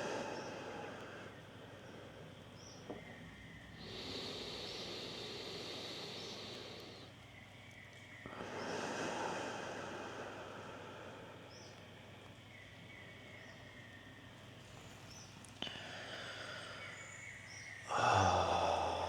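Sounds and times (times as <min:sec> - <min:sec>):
slow breaths close to microphone: 0:00.0 - 0:02.8, 0:03.7 - 0:07.2, 0:08.3 - 0:11.9.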